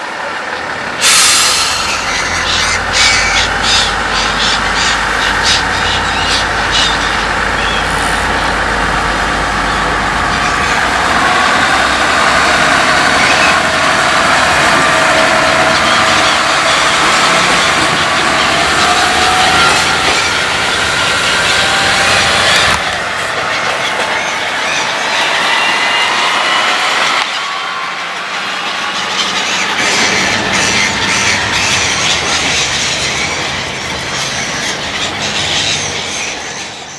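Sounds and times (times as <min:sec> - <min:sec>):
train running by: 0:00.0 - 0:36.9.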